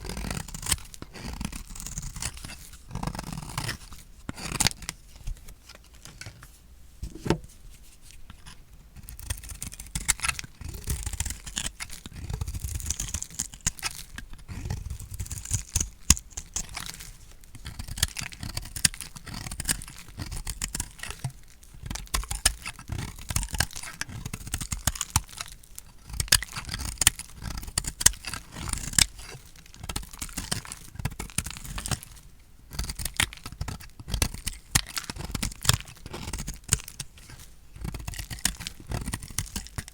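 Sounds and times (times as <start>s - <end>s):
blade cutting dry soap: 0.0s - 5.0s, 8.3s - 32.1s, 32.7s - 39.9s.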